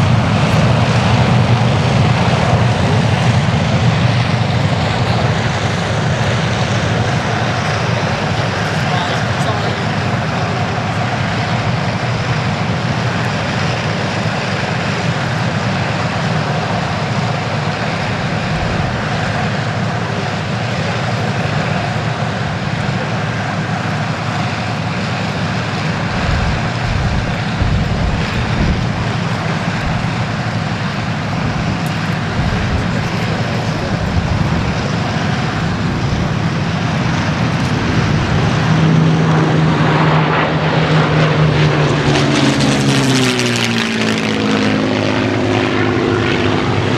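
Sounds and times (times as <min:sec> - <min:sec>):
propeller aircraft engine drone: 0:00.0 - 0:46.9.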